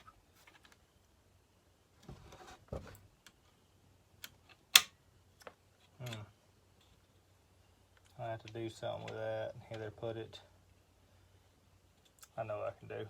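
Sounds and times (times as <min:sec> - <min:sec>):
light clicks and rustling of parts: 0:04.2 - 0:07.3, 0:07.9 - 0:10.0.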